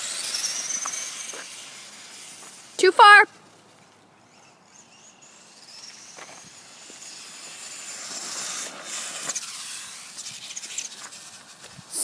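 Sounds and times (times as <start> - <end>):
electric toy car motor whining: 0.0 - 2.8, 3.6 - 12.0
tyre noise hiss: 5.2 - 12.0.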